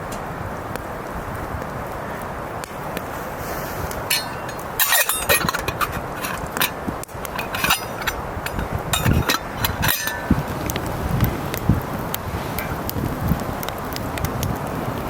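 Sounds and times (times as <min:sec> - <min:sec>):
light knocks and metallic clinks: 0:04.1 - 0:10.8.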